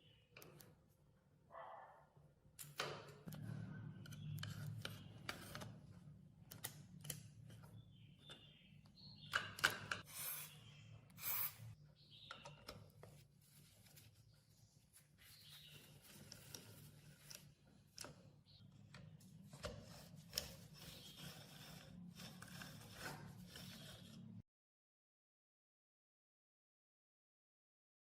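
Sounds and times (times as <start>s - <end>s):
scraping on metal: 19.8s - 24.4s.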